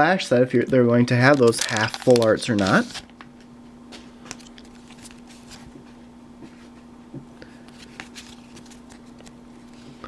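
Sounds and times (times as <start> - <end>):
steady low hum: 0.0 - 10.0
trading cards and foil pack rustling: 1.0 - 3.3, 4.0 - 5.7, 7.5 - 9.9.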